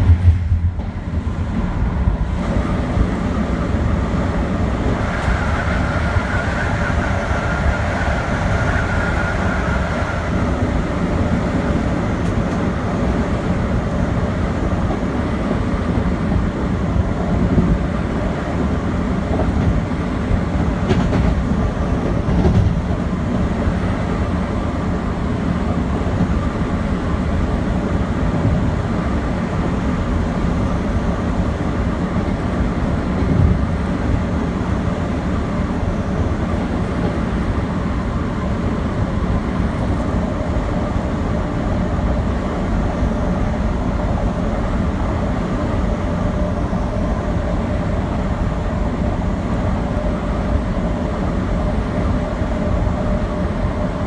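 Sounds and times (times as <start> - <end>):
train knock: 0.0 - 2.4, 20.5 - 23.1
train wheels rumbling on rail: 0.0 - 54.0.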